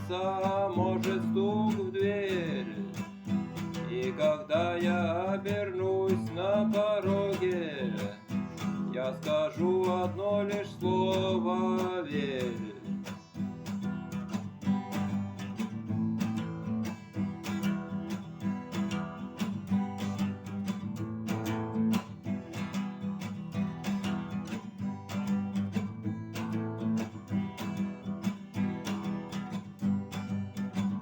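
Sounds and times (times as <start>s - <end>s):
acoustic guitar strumming chords: 0.0s - 31.0s.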